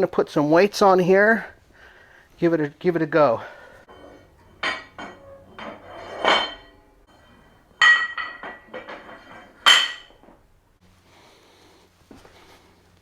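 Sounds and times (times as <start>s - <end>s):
weight plates clanking: 3.8s - 10.4s.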